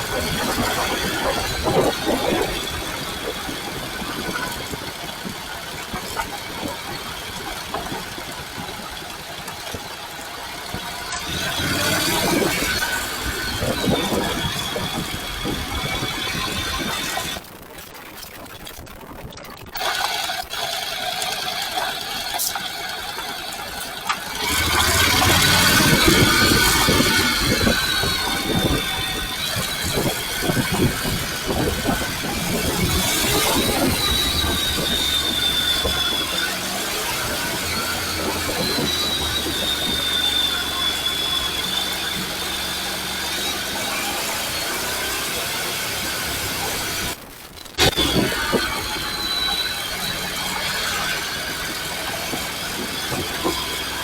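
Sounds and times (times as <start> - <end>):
motorcycle engine: 0.0 - 17.4, 19.8 - 54.0
road noise: 0.0 - 17.6, 19.8 - 54.0
wind noise: 0.0 - 19.8, 24.2 - 54.0.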